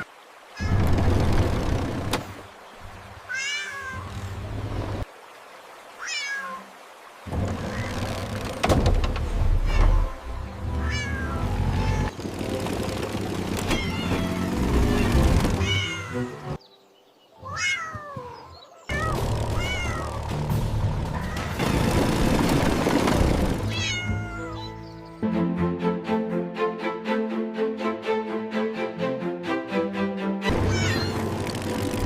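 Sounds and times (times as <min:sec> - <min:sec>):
background music: 0:08.9 - 0:17.7, 0:18.9 - 0:32.0
cats meowing: 0:10.8 - 0:12.1, 0:15.6 - 0:16.4, 0:17.4 - 0:20.2, 0:23.7 - 0:24.8, 0:30.7 - 0:31.2.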